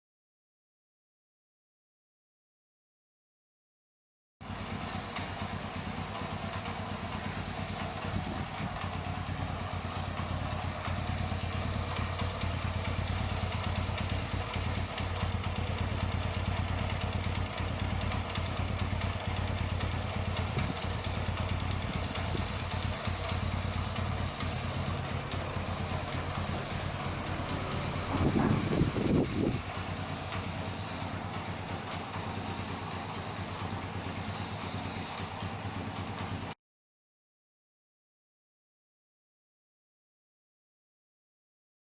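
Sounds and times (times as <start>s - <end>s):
motorcycle engine idling: 4.4s - 36.6s
valve train ticking: 4.7s - 36.5s.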